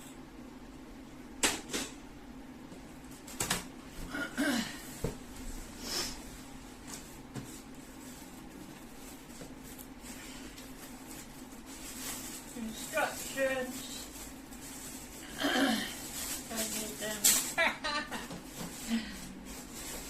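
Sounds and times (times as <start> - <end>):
steady low hum: 0.0 - 20.0
packaging rustling and scraping: 6.8 - 15.4, 16.0 - 20.0.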